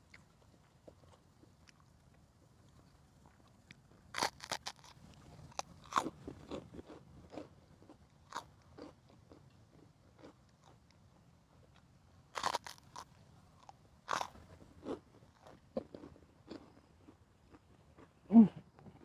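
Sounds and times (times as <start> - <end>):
person chewing crunchy food: 3.2 - 10.8, 12.4 - 18.1.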